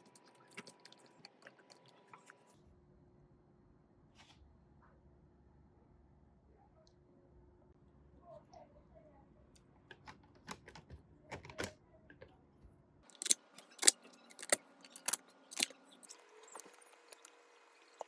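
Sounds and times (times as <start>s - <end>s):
small hard parts clattering: 13.1s - 18.0s.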